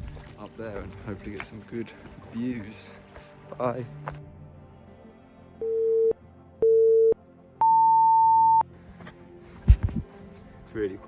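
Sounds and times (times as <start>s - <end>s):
faint background music: 0.0s - 7.7s, 8.6s - 11.0s
countdown beeps: 6.6s - 8.6s.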